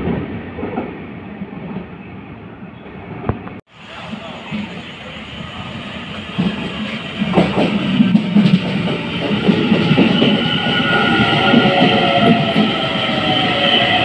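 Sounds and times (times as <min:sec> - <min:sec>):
train wheels clattering over rails: 0:06.1 - 0:14.0.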